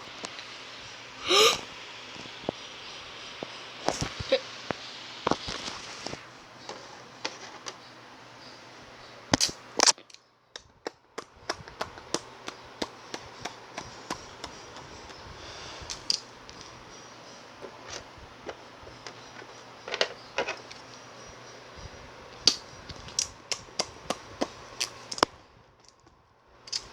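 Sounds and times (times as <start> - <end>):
crunchy eating: 10.9 - 26.9.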